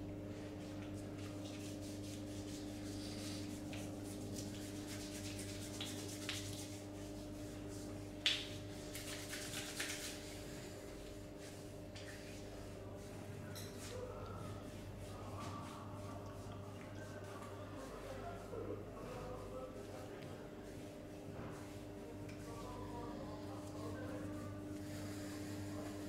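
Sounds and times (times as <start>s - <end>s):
steady low hum: 0.0s - 26.0s
hands rubbing skin: 0.7s - 12.8s, 19.1s - 22.8s.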